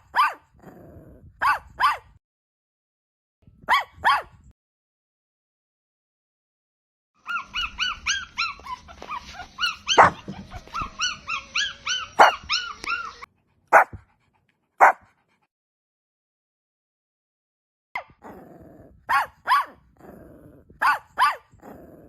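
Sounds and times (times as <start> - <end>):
dog yapping: 0.0 - 0.4, 1.4 - 2.1, 3.7 - 4.3, 7.2 - 14.0, 19.1 - 19.8, 20.8 - 21.5
dog barking: 0.0 - 0.5, 1.4 - 2.2, 3.7 - 4.4, 7.3 - 14.1, 14.8 - 15.1, 19.1 - 19.8, 20.8 - 21.5.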